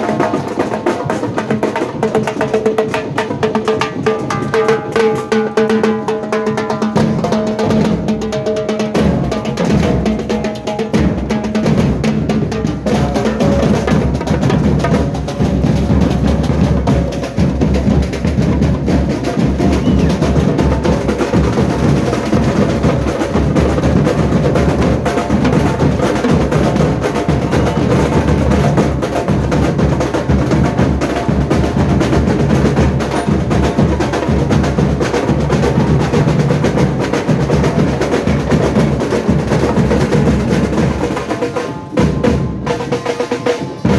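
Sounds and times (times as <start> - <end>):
percussion band playing: 0.0 - 43.9
snare drums: 0.0 - 43.9
bass drums: 8.9 - 41.3.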